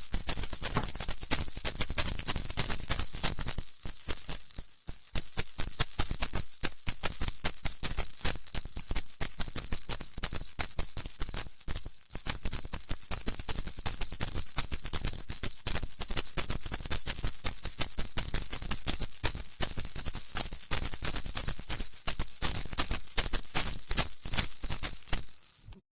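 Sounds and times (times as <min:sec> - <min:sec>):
maracas rattling: 0:00.0 - 0:06.6, 0:14.9 - 0:25.8.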